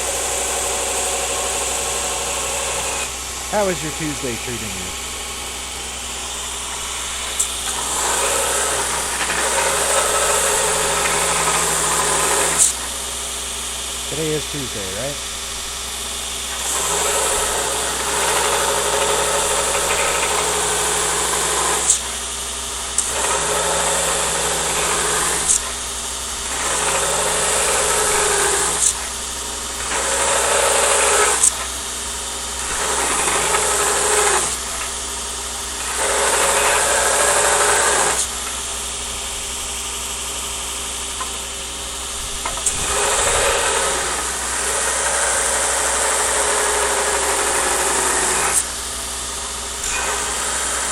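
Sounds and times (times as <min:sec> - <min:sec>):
belt grinder motor hum: 0:32.5 - 0:35.0, 0:35.6 - 0:39.0, 0:42.6 - 0:48.7
blade grinding on belt: 0:35.8 - 0:38.5.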